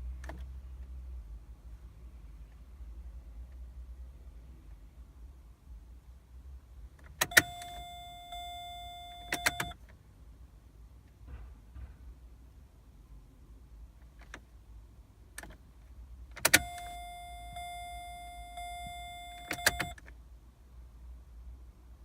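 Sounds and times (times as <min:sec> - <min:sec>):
ignition click: 0:07.0 - 0:10.0, 0:15.3 - 0:15.6, 0:16.3 - 0:20.2.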